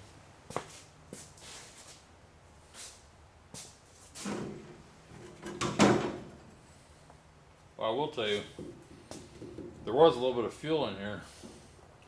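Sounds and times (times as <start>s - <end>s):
objects knocking and scraping: 4.2s - 6.6s, 8.5s - 9.9s.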